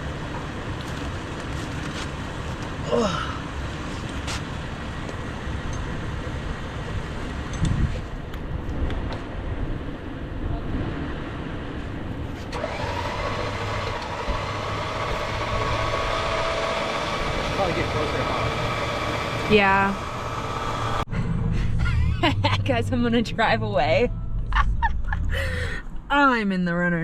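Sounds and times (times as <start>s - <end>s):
vehicle engines idling: 0.0s - 8.6s, 11.3s - 26.4s.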